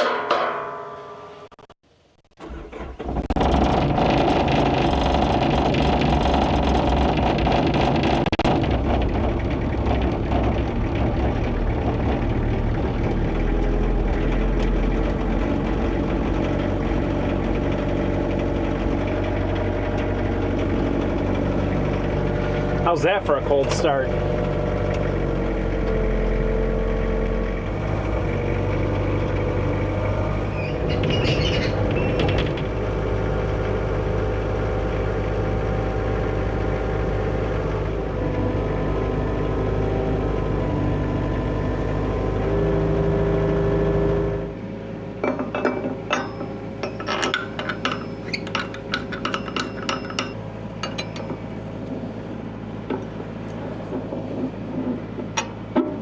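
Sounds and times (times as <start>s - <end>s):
diesel engine running: 2.4s - 56.0s
sharp metallic clinks: 45.2s - 51.5s.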